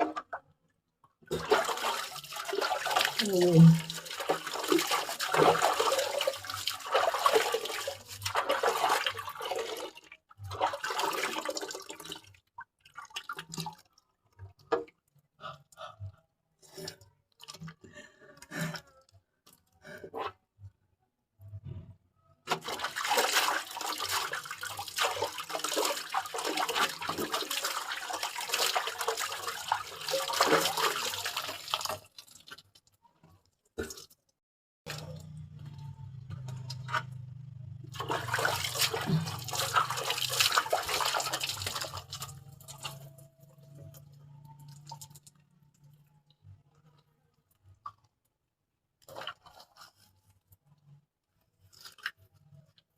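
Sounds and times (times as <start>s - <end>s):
water splashing and sloshing: 1.2s - 15.2s, 21.6s - 32.9s, 34.9s - 48.1s, 49.0s - 52.6s
water dripping: 37.9s - 48.1s.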